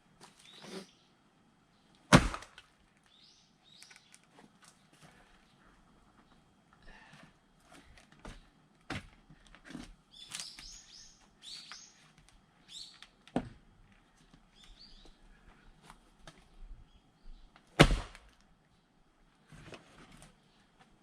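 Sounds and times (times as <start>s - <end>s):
small bird chirping: 3.1s - 4.2s, 10.1s - 13.0s.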